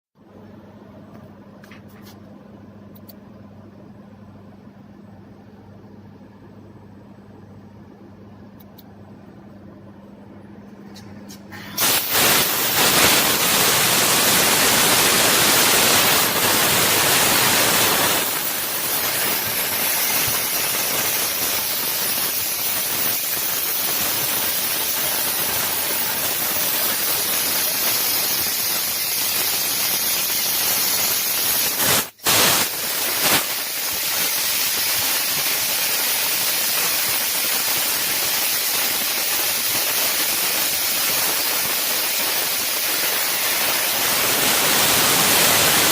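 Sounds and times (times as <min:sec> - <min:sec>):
laser cutter gas jet hissing: 0:11.3 - 0:45.9.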